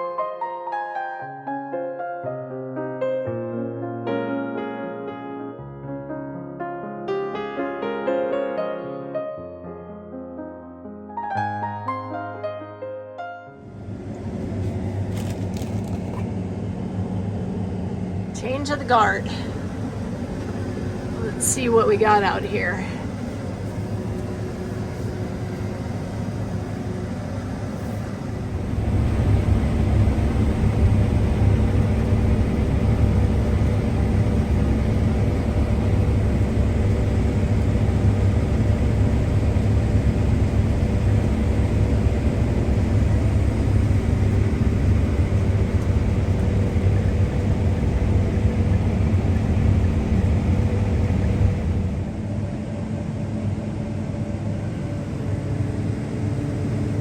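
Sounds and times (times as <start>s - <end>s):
combine harvester drone: 13.6s - 57.0s.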